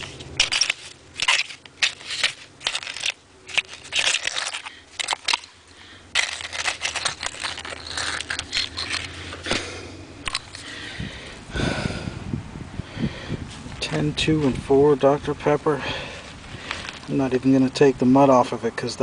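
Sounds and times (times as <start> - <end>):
digging scrapes and glass clinks: 0.0 - 5.5, 6.1 - 9.6, 10.2 - 10.7.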